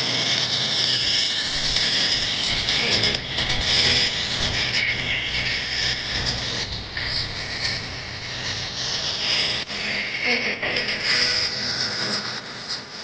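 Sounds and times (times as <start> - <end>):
loud trance music through speakers: 1.5 - 11.4.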